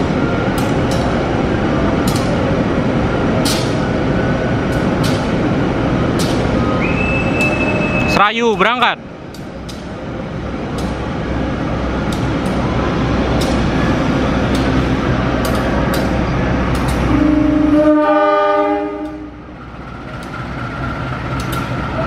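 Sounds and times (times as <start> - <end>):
train rumbling past: 0.0 - 22.0
locomotive horn blast: 17.0 - 19.4.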